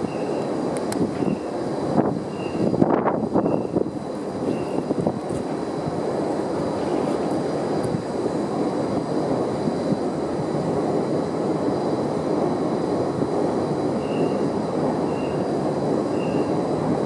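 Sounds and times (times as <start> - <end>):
train wheels rumbling on rails: 0.0 - 17.0.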